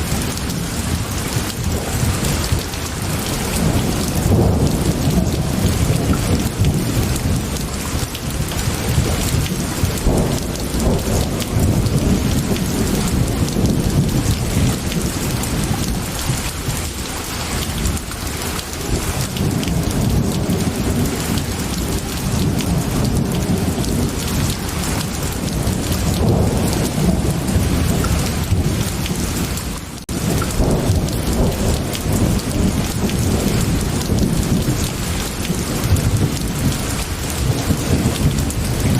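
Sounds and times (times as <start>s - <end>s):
heavy rain: 0.0s - 38.9s
low thunder rumble: 0.0s - 38.9s.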